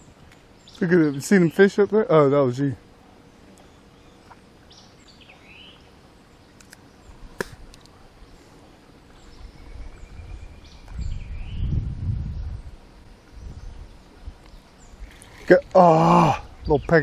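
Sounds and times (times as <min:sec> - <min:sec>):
bird chirps: 0:03.5 - 0:07.1.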